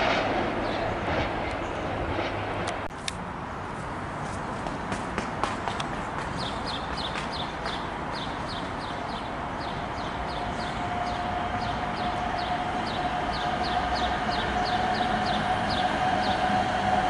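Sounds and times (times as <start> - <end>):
steady background noise: 0.0 - 17.0
bird chirping: 6.4 - 16.6.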